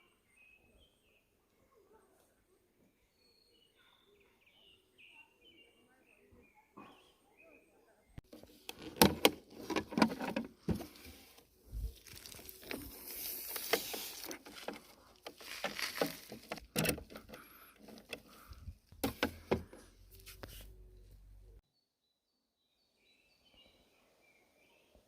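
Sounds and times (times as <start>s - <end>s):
clicks and knocks of handling: 8.2s - 11.1s, 12.1s - 20.5s.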